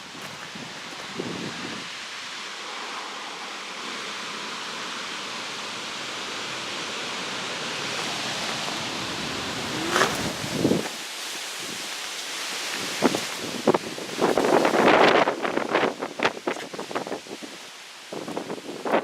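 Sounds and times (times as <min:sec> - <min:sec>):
wind on microphone: 0:00.0 - 0:01.9, 0:07.9 - 0:12.0, 0:12.6 - 0:17.6
short rising squeal: 0:08.0 - 0:10.8.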